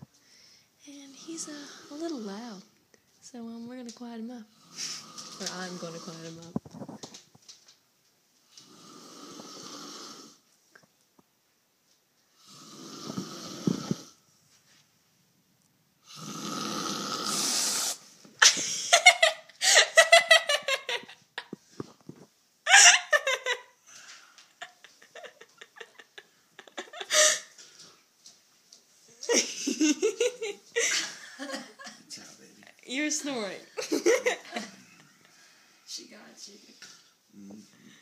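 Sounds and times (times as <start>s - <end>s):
man snoring loudly: 8.6s - 10.4s, 12.4s - 14.2s, 16.0s - 18.0s
laughter: 18.4s - 21.6s, 22.7s - 23.7s, 24.6s - 27.4s, 29.2s - 32.0s, 33.8s - 35.0s.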